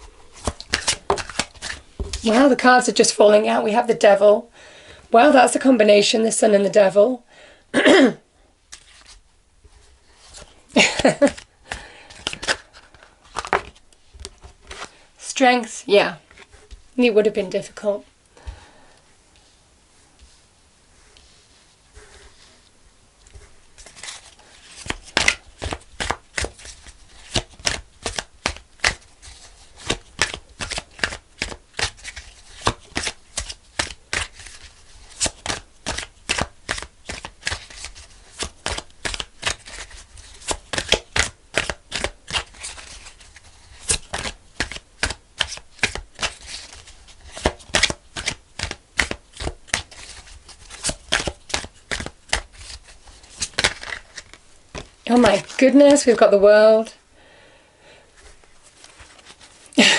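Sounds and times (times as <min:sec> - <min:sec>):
cards being shuffled: 0:00.3 - 0:02.5, 0:08.7 - 0:09.2, 0:10.2 - 0:15.0, 0:16.2 - 0:16.9, 0:23.3 - 0:56.2, 0:58.2 - 0:59.8.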